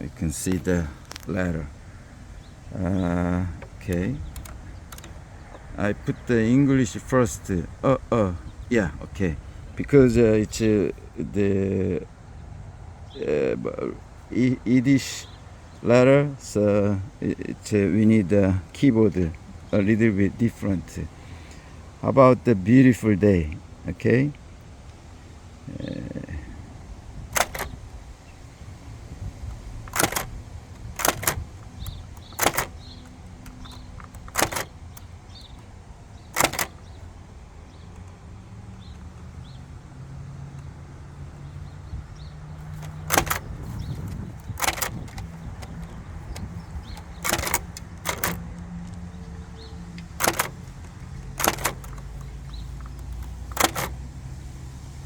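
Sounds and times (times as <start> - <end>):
typewriter key clacks: 3.6 - 5.2, 27.4 - 27.8, 29.5 - 35.0, 36.3 - 36.8, 42.7 - 48.5, 50.1 - 54.0.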